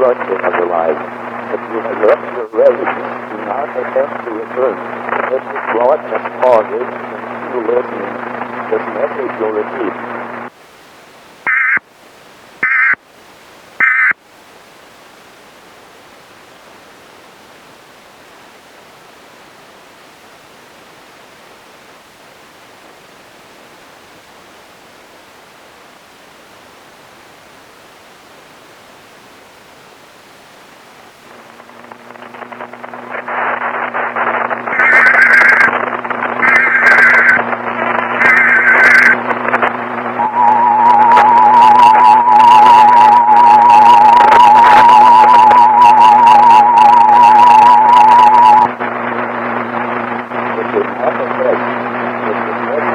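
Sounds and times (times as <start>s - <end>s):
hum: 0.0s - 11.8s, 26.0s - 52.9s
static hiss: 0.0s - 52.9s
warbling data tones: 11.5s - 11.8s, 31.3s - 52.9s.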